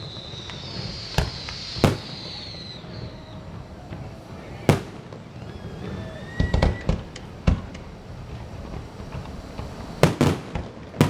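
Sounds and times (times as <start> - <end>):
firework bangs: 0.0 - 11.0
firework whistle: 0.0 - 11.0.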